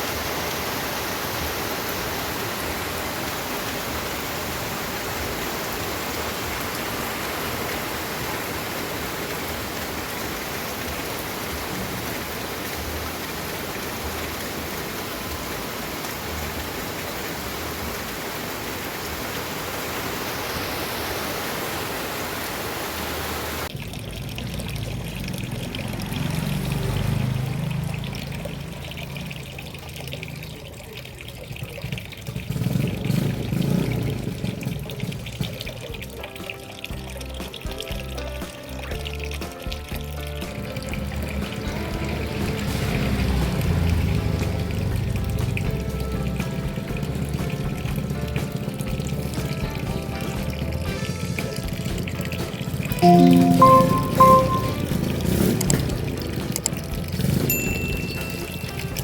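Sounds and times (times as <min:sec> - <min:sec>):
steady rain hiss: 0:00.0 - 0:23.7.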